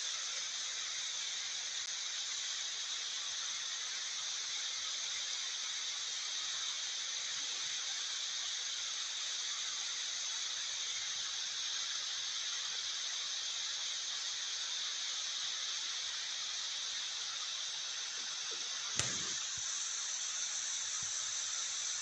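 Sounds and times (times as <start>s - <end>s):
sharp click: 19.0s - 19.4s.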